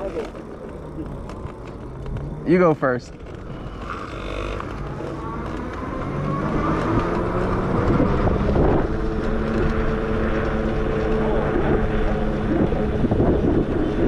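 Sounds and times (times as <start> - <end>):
electric bike motor whine: 0.0 - 14.0
wind rumbling on microphone: 3.1 - 14.0.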